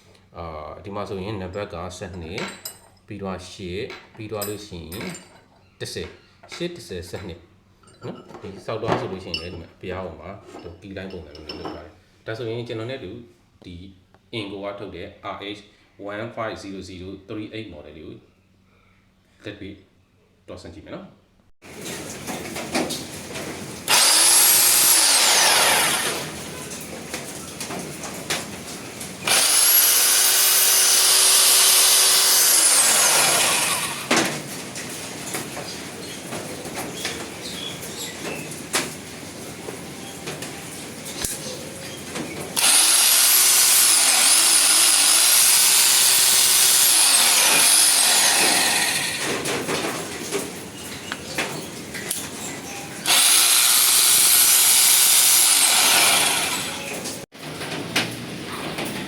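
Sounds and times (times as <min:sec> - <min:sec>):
rotary hammer whining: 0:23.9 - 0:26.6, 0:29.2 - 0:34.2, 0:42.6 - 0:49.3, 0:53.0 - 0:57.2.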